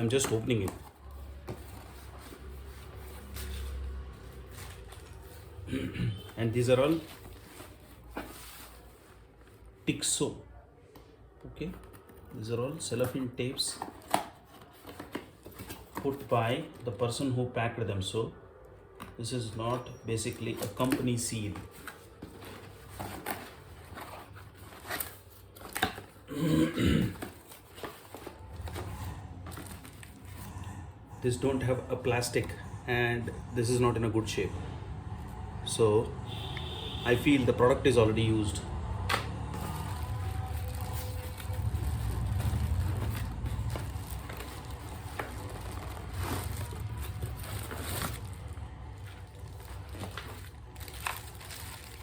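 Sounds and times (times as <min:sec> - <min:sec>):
cardboard package rustling: 0:00.0 - 0:05.6, 0:06.7 - 0:09.6, 0:20.2 - 0:26.3, 0:27.2 - 0:30.4, 0:38.2 - 0:52.0
steady low rumble: 0:38.6 - 0:51.1
packaging crinkling: 0:38.9 - 0:52.0.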